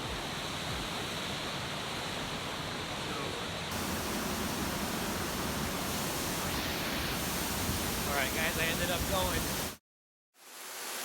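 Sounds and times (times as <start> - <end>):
waterfall rushing: 3.6 - 9.8.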